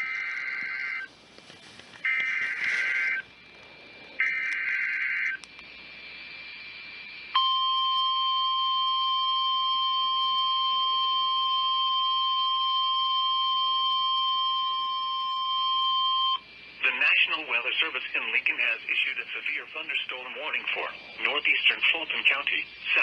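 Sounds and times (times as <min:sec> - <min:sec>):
steady alarm tone: 0:00.0 - 0:01.1, 0:02.0 - 0:18.0.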